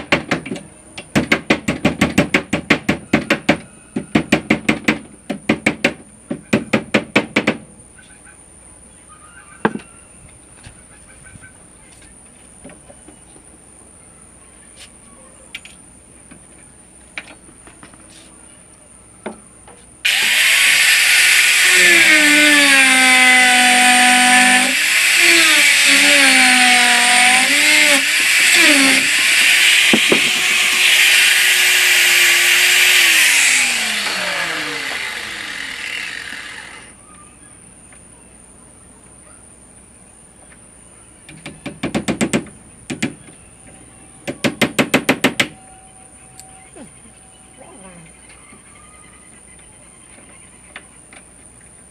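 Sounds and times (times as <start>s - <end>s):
loud hiss: 20.0s - 37.0s
power tool cutting wood: 20.0s - 37.0s
power tool spinning down: 20.1s - 37.0s.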